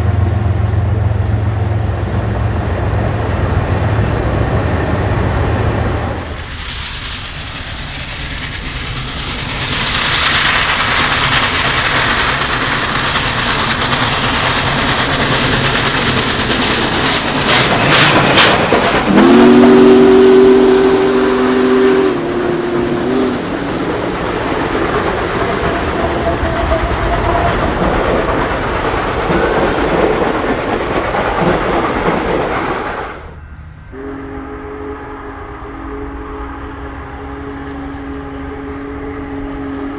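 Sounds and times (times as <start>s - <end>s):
steam locomotive exhaust and wheels: 0.0s - 39.9s
sharp clatter: 6.3s - 19.1s
steam whistle chord: 19.1s - 23.9s, 33.9s - 39.9s.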